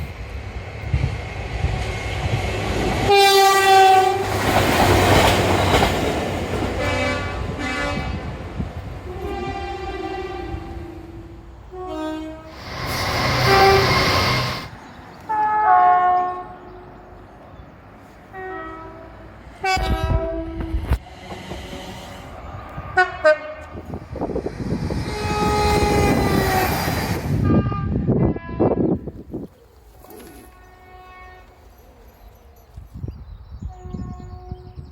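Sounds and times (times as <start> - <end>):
trains passing rushing: 0.0 - 28.2
train horn blasts: 3.0 - 4.4, 6.8 - 8.4, 9.0 - 14.7, 15.3 - 16.9, 18.3 - 21.0, 22.9 - 23.8, 25.1 - 26.7, 27.3 - 29.0, 30.5 - 31.7, 33.6 - 34.9.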